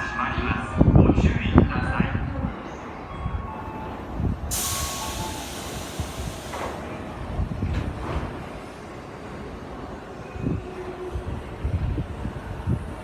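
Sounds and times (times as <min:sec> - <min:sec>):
low train rumble: 0:00.0 - 0:13.0
air brakes hissing: 0:04.5 - 0:07.5.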